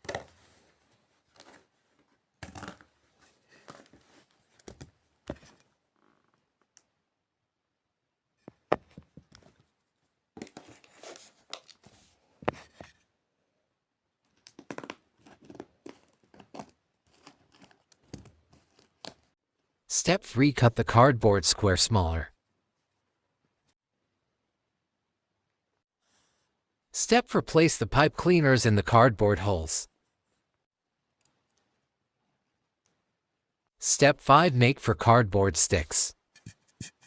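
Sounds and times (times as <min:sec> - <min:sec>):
scissors cutting cardboard: 0:14.5 - 0:19.3.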